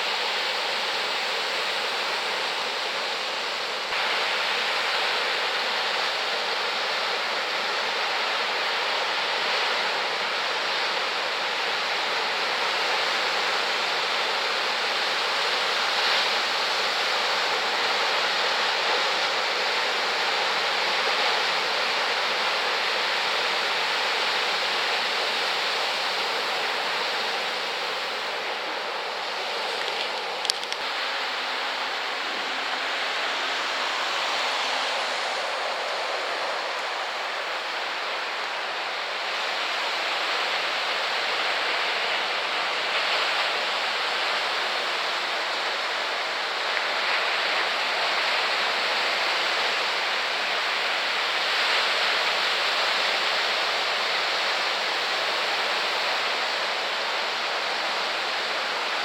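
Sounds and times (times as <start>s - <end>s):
surf breaking on shore: 16.2s - 59.0s.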